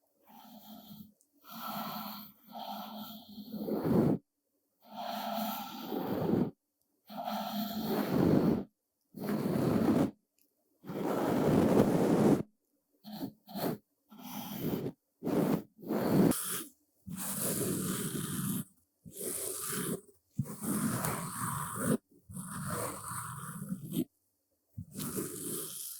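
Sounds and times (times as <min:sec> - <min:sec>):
soft brush strokes: 0:05.8 - 0:10.2, 0:10.8 - 0:12.5, 0:13.1 - 0:24.1, 0:24.8 - 0:25.9.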